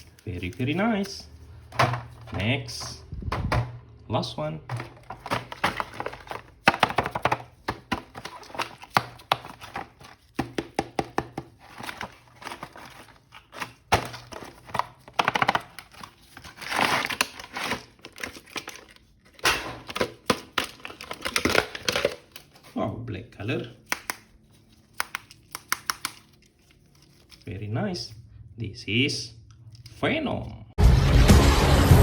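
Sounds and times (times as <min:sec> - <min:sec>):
plastic packaging crinkling and tearing: 0:00.0 - 0:02.9, 0:04.7 - 0:22.7, 0:23.8 - 0:27.6.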